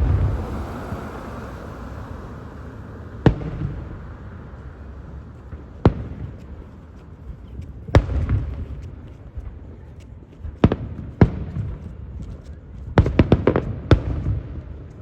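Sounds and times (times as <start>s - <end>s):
fireworks bangs with rumble: 0.0s - 1.0s, 3.1s - 9.8s, 10.4s - 12.3s, 12.9s - 15.0s.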